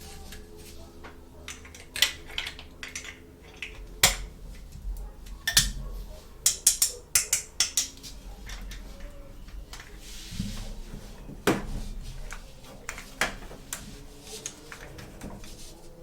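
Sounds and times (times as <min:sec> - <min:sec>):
plastic toy pieces clicking: 0:01.5 - 0:04.3, 0:06.4 - 0:09.1.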